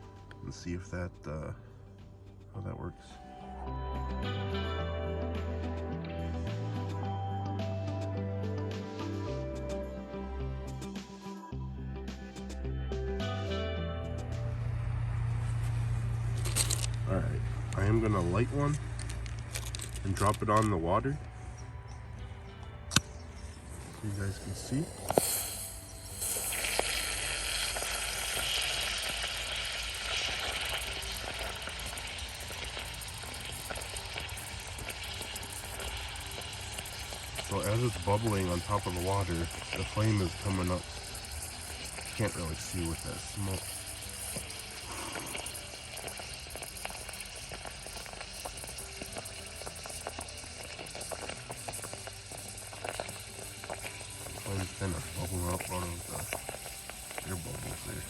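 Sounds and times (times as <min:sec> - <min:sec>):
flame crackling and popping: 0:15.4 - 0:21.4, 0:22.9 - 0:58.0
match hissing and sizzling: 0:15.4 - 0:21.6, 0:22.9 - 0:58.0
match striking scrape: 0:16.3 - 0:17.1, 0:17.8 - 0:20.8, 0:23.8 - 0:58.0.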